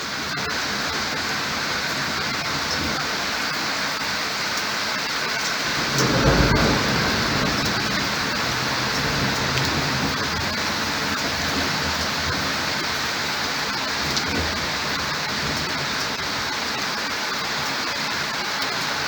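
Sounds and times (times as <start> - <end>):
heavy rain: 0.0 - 19.0
thunder rumbling: 4.9 - 17.2.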